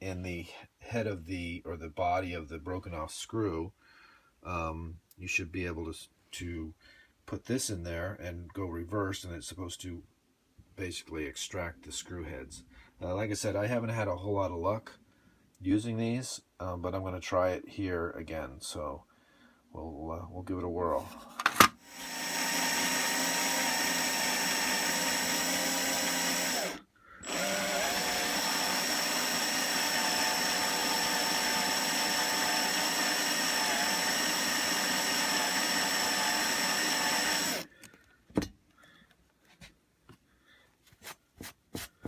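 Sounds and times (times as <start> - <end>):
electric drill drilling into metal: 21.6 - 37.7.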